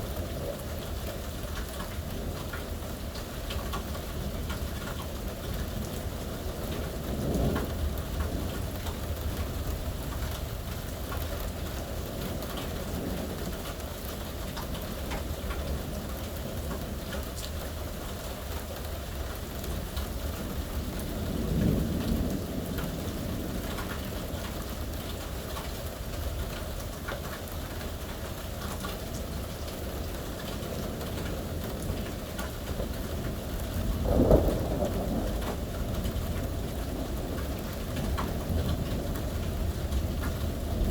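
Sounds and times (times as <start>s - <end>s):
steady rain: 0.0s - 40.9s
thunder rumbling: 0.0s - 40.9s
thunder crack: 31.8s - 40.9s.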